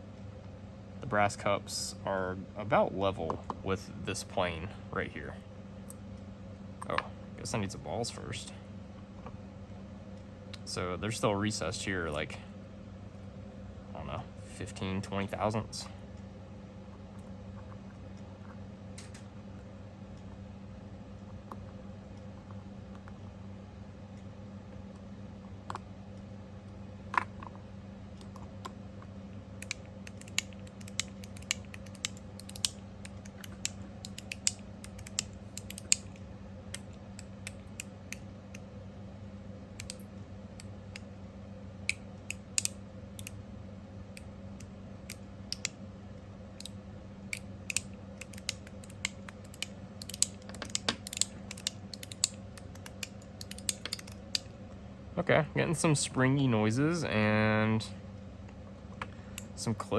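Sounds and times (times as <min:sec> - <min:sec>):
fidget slider clicking: 0:29.6 - 0:36.2, 0:47.7 - 0:54.4.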